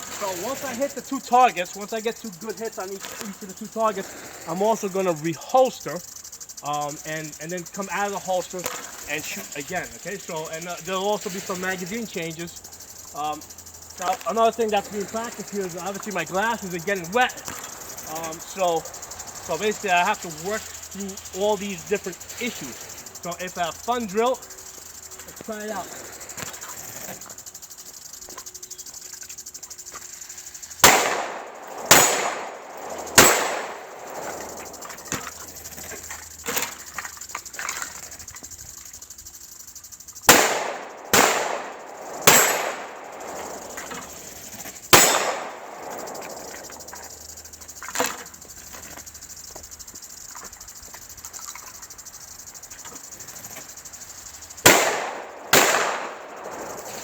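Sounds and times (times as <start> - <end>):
faint steady hiss: 0.0 - 57.0
pistol gunshots with echo: 30.8 - 34.6, 40.3 - 43.8, 44.9 - 46.6, 54.7 - 56.7.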